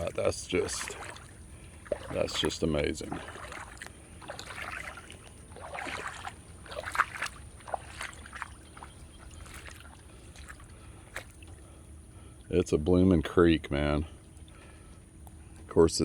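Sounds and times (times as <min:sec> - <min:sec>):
boots wading through water: 0:00.0 - 0:12.6.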